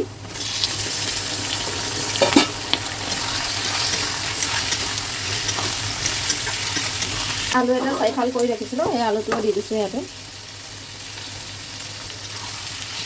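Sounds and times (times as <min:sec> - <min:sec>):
chicken sizzling in hot oil: 0:00.0 - 0:13.0
spatula clicking and scraping pan: 0:02.1 - 0:09.5.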